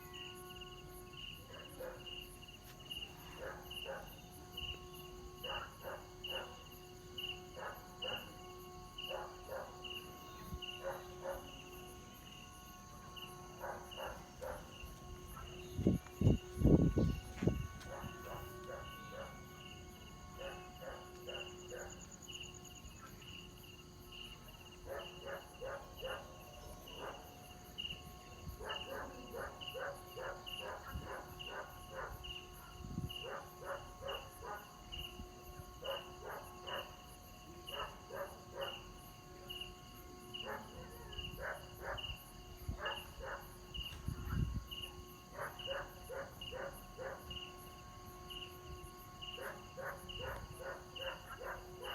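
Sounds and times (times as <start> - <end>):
crickets chirping: 0.0 - 51.9
kite flutes droning: 2.4 - 23.2.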